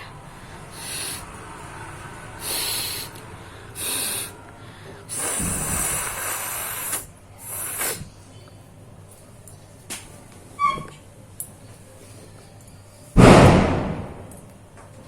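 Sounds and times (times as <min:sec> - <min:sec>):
person blowing nose hard: 0:00.6 - 0:01.4, 0:02.4 - 0:04.4, 0:05.0 - 0:08.1.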